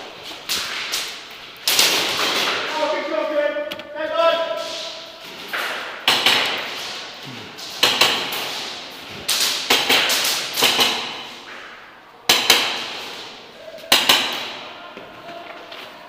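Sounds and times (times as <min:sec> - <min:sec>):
airsoft gun shots echoing: 0:05.6 - 0:06.8, 0:09.3 - 0:11.3.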